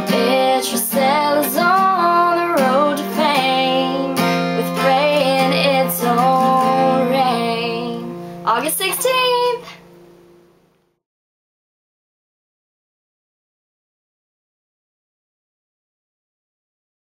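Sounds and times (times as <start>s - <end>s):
person singing: 0.0s - 8.2s
acoustic guitar strumming: 0.0s - 10.4s.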